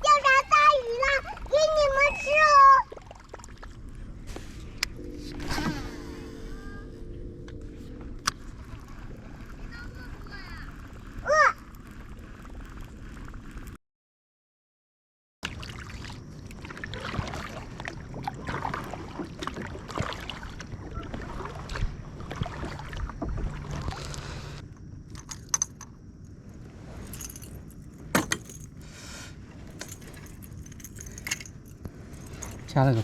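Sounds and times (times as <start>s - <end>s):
fishing tackle clinking and rustling: 25.1s - 26.0s, 26.9s - 28.8s, 29.6s - 33.0s.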